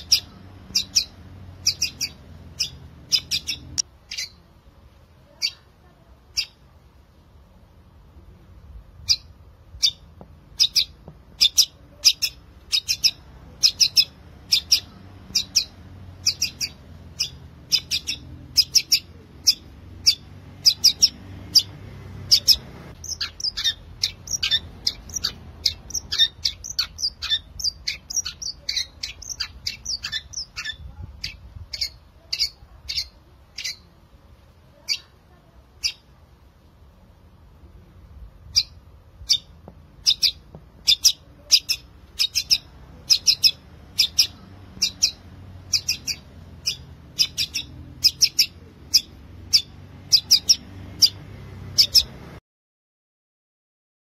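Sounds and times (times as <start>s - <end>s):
bird singing high chirps: 0.0s - 4.4s, 6.3s - 6.6s, 9.0s - 33.9s, 38.5s - 52.2s.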